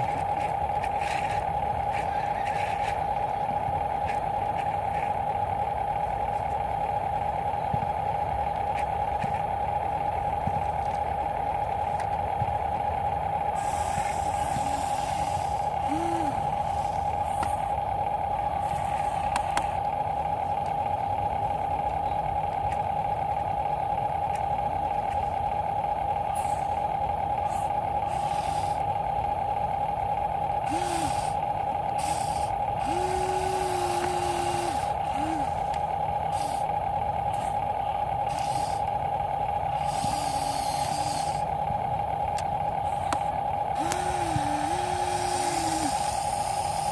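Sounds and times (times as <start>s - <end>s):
high-pitched electric whine: 30.6s - 36.7s, 37.3s - 41.5s, 43.7s - 46.9s.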